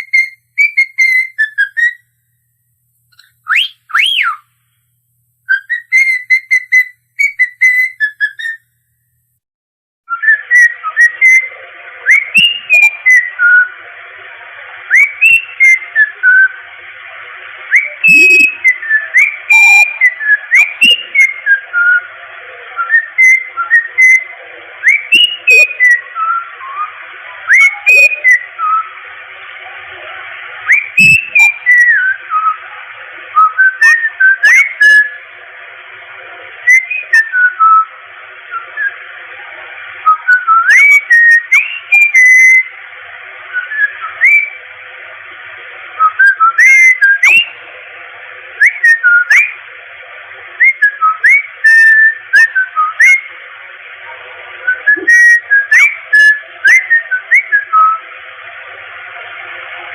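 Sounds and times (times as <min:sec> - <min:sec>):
cockatiel whistling a tune: 0:00.0 - 0:02.0, 0:03.2 - 0:04.5, 0:05.4 - 0:08.7, 0:10.1 - 0:13.8, 0:14.9 - 0:16.6, 0:17.6 - 0:22.1, 0:22.7 - 0:29.0, 0:30.6 - 0:32.7, 0:33.3 - 0:35.2, 0:36.6 - 0:37.9, 0:38.5 - 0:39.0, 0:40.0 - 0:42.7, 0:43.5 - 0:44.6, 0:46.0 - 0:47.6, 0:48.6 - 0:49.6, 0:50.6 - 0:53.3, 0:54.6 - 0:58.0
steady hiss: 0:10.3 - 0:59.9.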